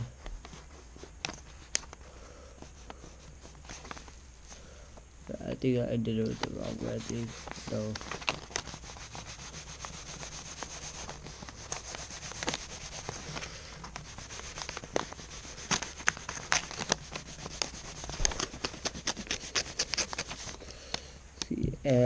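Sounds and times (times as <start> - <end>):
knife scraping through paper: 6.4 - 20.6.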